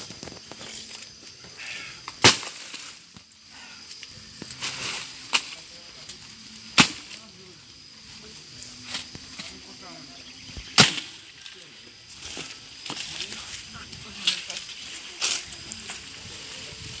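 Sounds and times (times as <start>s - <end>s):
sharp cracks: 2.0s - 3.0s, 6.7s - 7.3s, 10.6s - 11.6s.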